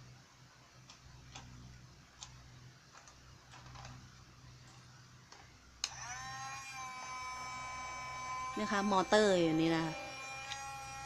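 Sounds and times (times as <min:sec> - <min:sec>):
small electric motor whining: 0:05.8 - 0:11.0.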